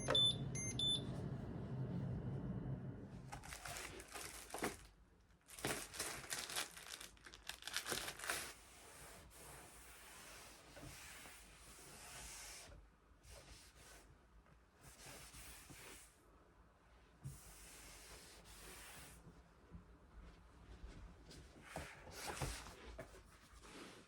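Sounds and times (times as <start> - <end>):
crinkling handling noise: 3.2 - 8.6.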